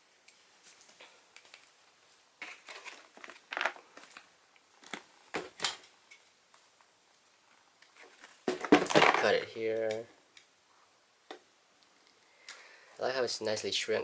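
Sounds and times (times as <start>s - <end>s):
plastic packaging crinkling: 2.4s - 5.1s.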